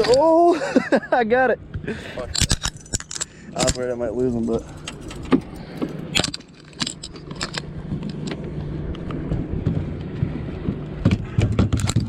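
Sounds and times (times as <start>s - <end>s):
steady low hum: 0.0s - 12.0s
fishing gear clicks and rattles: 2.2s - 9.2s, 11.0s - 12.0s.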